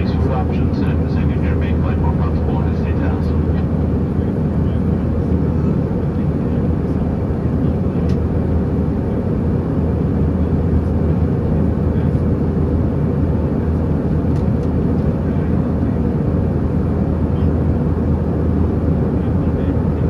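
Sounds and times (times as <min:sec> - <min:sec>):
jet engine drone in cabin: 0:00.0 - 0:20.0
low hum: 0:00.0 - 0:20.0.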